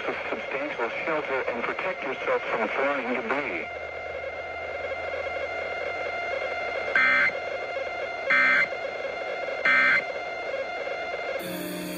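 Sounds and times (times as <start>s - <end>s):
radio hiss: 0.0s - 3.7s, 11.4s - 11.9s
buzzy digital chirps: 11.4s - 11.9s.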